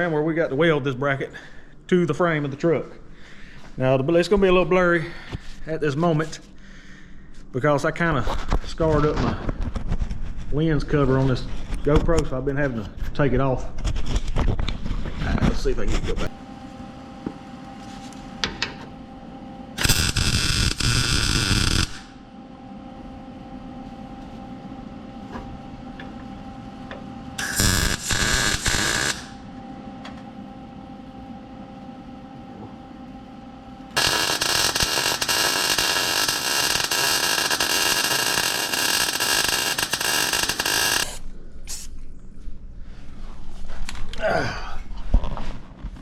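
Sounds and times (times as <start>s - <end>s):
steady low hum: 0.0s - 46.0s
welding arc crackling: 19.8s - 22.2s, 27.4s - 29.4s, 34.0s - 41.2s.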